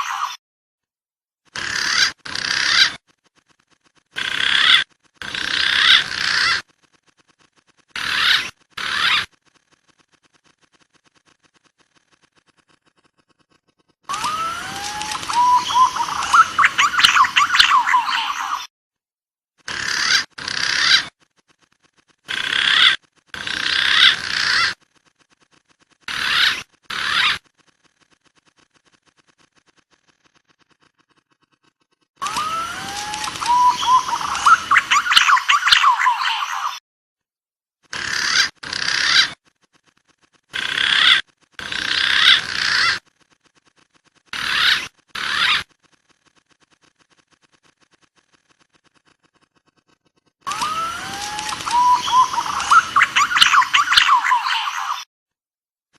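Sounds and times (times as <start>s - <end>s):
pigeon calls: 1.5s - 9.4s, 10.3s - 18.7s, 19.6s - 24.8s, 25.4s - 27.6s, 28.4s - 36.8s, 37.9s - 45.8s, 46.8s - 55.1s
pigeon and dove calls: 14.1s - 18.7s, 32.2s - 36.8s, 50.5s - 55.1s.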